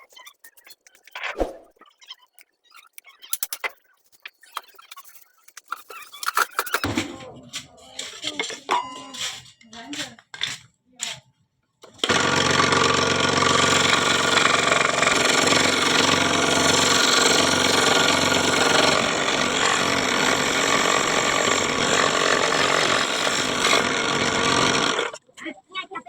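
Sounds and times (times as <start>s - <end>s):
power tool motor whining: 12.0s - 25.2s.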